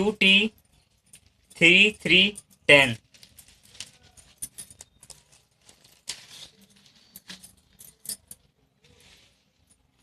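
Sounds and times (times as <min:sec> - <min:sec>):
packaging rustle: 0:03.0 - 0:08.0.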